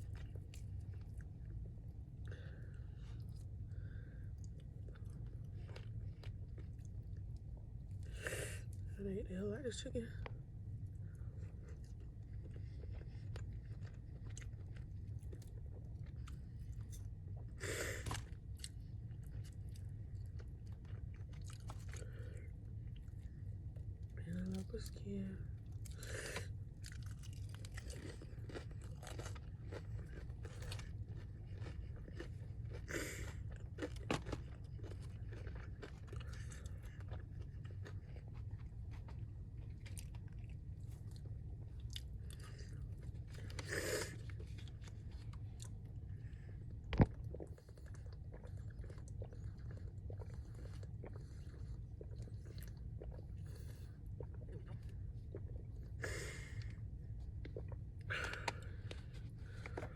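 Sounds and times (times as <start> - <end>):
chewing crispy fried chicken: 0.0 - 9.0, 10.1 - 59.9.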